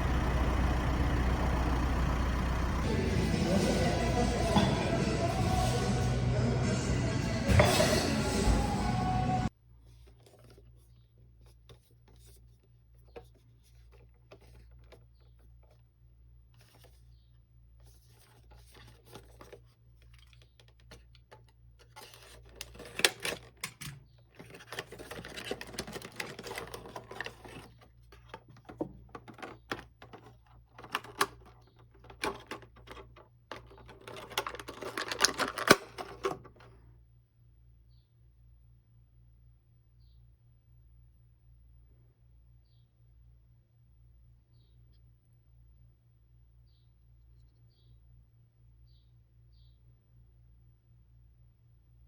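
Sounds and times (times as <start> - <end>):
packaging rustling: 17.9 - 36.6.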